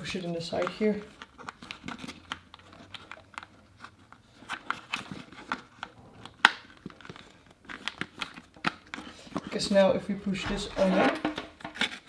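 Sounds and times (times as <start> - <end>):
device and cable handling clicks: 0.5 - 9.5.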